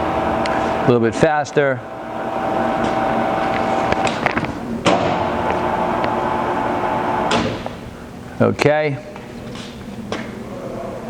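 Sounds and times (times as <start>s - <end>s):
lathe gear whine: 0.0s - 7.3s.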